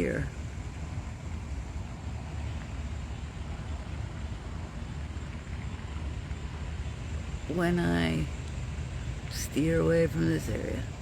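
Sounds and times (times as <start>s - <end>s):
low background rumble: 0.0s - 11.0s.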